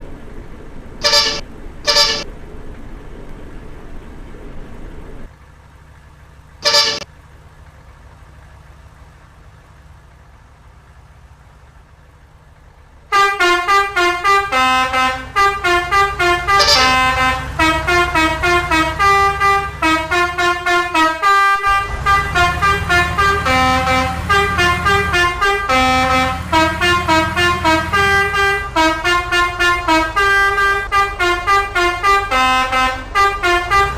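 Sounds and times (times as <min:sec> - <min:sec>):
multi-tone horn honks and melody: 0:01.0 - 0:02.3, 0:06.6 - 0:07.1, 0:13.1 - 0:33.9.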